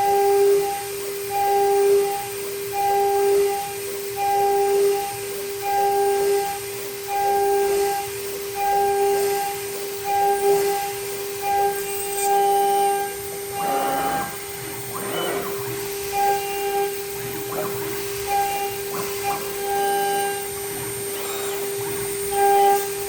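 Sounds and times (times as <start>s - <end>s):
stepper motors whining: 10.0s - 23.0s.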